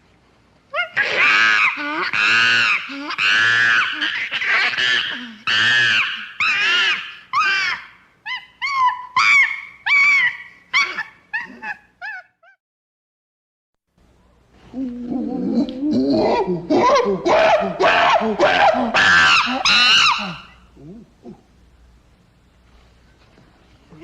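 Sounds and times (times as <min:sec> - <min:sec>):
chimpanzee hooting: 0:00.8 - 0:12.6, 0:14.8 - 0:21.5
chimpanzee shrieking: 0:00.8 - 0:12.6, 0:16.1 - 0:20.7.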